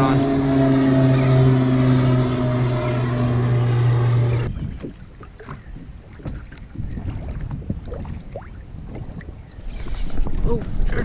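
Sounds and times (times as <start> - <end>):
motor hum: 0.0 - 4.8
water splashes: 4.5 - 11.0.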